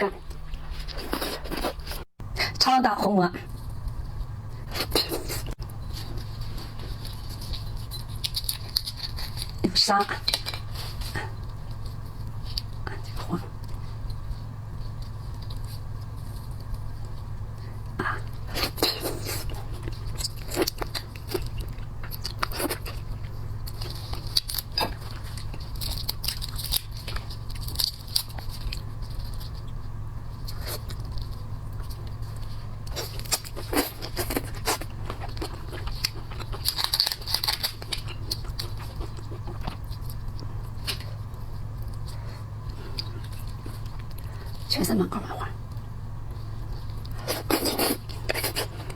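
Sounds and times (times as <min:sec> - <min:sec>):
steady low hum: 0:00.0 - 0:48.9
chewing: 0:03.5 - 0:44.7, 0:45.6 - 0:48.9
seafood shell cracking: 0:32.9 - 0:41.3.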